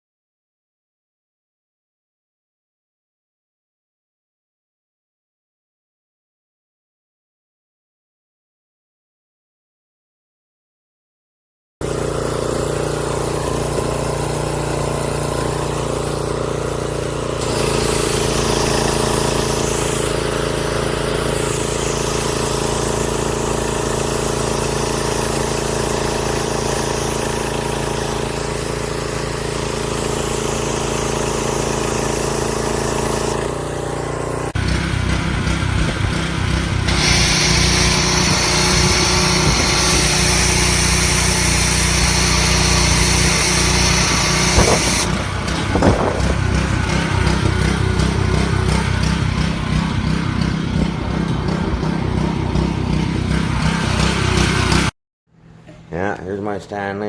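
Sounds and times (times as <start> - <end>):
pressure washer motor hum: 11.8 - 54.9
water spraying hiss: 38.4 - 46.4.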